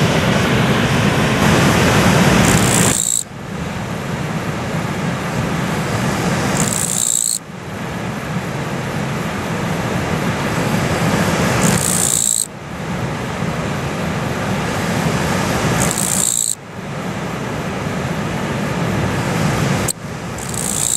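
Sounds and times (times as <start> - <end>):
river rushing: 0.0 - 20.9
katydid buzzing calls: 2.4 - 3.5, 6.4 - 7.7, 11.5 - 12.7, 15.7 - 16.7, 19.9 - 20.9.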